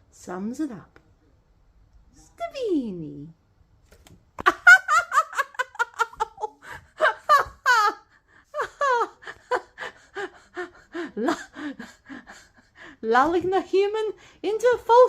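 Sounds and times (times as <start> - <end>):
person laughing breathily: 5.1 - 13.0.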